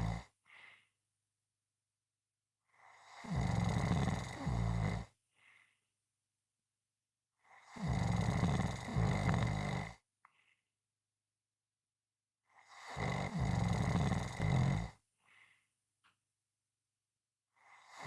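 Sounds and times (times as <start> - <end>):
loud rasping snores: 0.0 - 0.3, 2.7 - 5.2, 7.4 - 10.0, 12.6 - 15.0, 17.6 - 18.0
faint short breath: 0.4 - 1.0, 5.3 - 5.8, 15.2 - 15.8.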